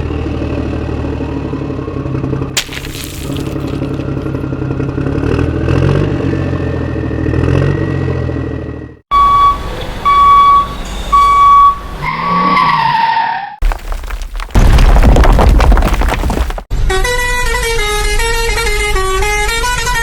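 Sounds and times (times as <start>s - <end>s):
vehicle engine running: 0.0s - 2.6s, 3.2s - 9.0s
long loud beeps: 9.1s - 12.0s.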